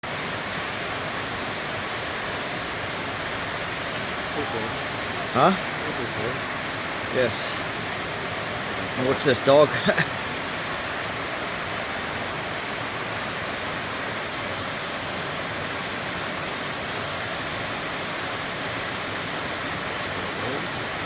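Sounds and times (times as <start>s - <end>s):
waterfall rushing: 0.0s - 21.0s.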